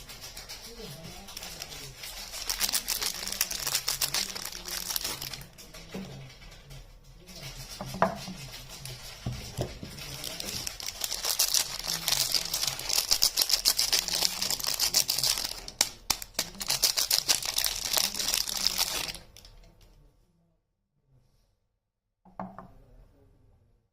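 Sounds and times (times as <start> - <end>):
packaging crinkling and tearing: 1.3 - 5.5, 9.8 - 19.4.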